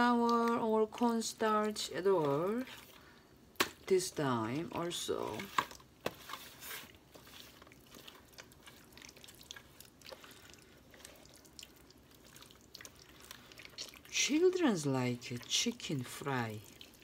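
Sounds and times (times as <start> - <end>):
wet squishing of hands on chicken: 0.2 - 3.9, 5.3 - 17.0.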